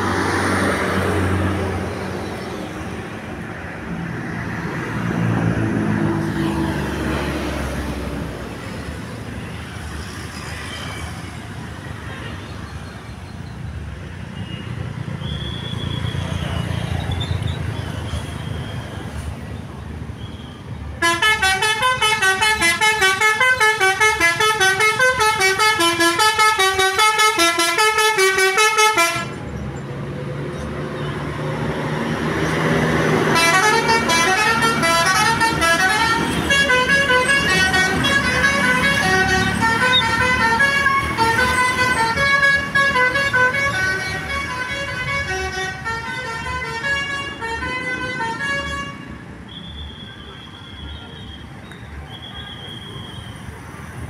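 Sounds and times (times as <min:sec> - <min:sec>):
engine and road noise: 0:00.0 - 0:54.0
multi-tone musical bus horn: 0:21.0 - 0:29.4, 0:33.2 - 0:51.4.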